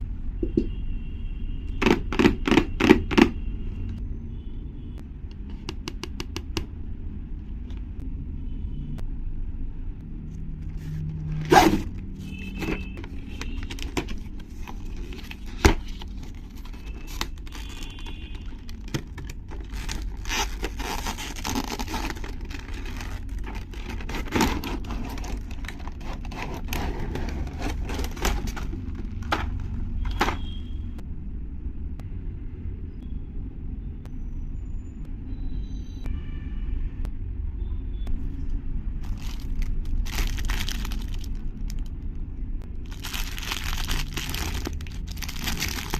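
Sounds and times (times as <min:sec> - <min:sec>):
plastic and card crinkling: 0:10.6 - 0:30.6, 0:39.0 - 0:42.1, 0:42.8 - 0:45.9
packaging scraping: 0:10.7 - 0:30.6, 0:39.0 - 0:41.8, 0:42.9 - 0:45.9
packaging clicks: 0:12.5 - 0:30.4.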